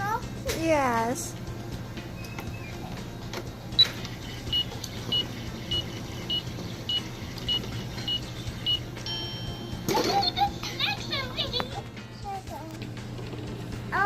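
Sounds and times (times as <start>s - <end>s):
short electronic beeps: 3.8s - 9.7s.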